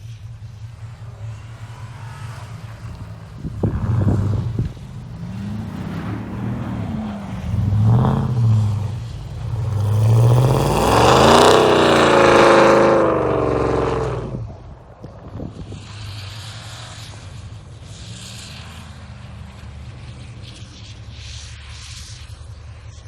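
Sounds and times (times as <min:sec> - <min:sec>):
pickup truck engine revving: 0:00.1 - 0:14.9.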